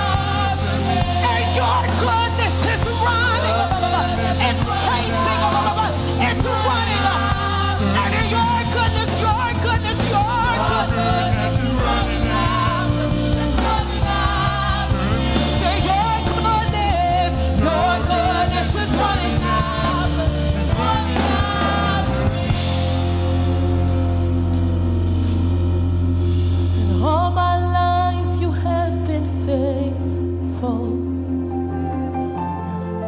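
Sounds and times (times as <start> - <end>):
people singing: 0.0 - 24.4
live praise band music: 0.0 - 33.0.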